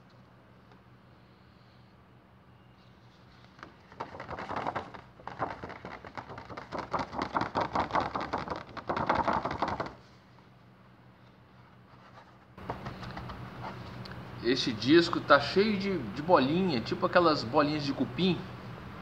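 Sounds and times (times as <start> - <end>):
cloth rubbing cardboard sleeve: 3.1 - 10.1, 11.6 - 13.9.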